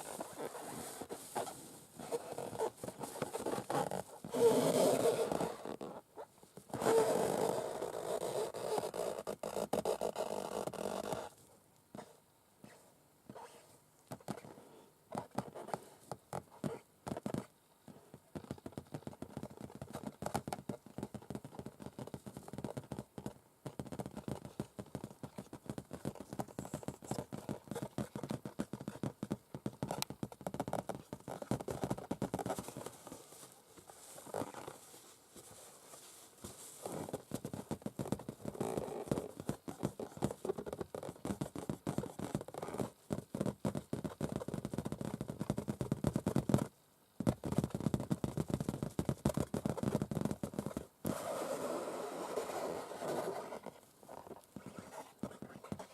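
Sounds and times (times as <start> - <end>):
scratchy rubbing on rubber: 0.0 - 11.4, 12.0 - 55.9
nails tapping on balloons: 15.1 - 17.6, 18.2 - 33.0, 36.8 - 51.2, 54.2 - 55.9.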